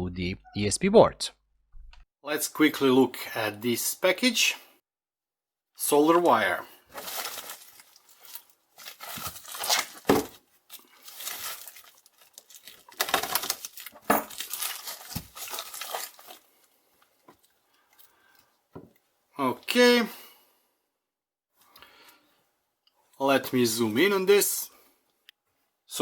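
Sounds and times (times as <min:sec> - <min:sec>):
package paper tearing and crinkling: 0:06.9 - 0:16.5.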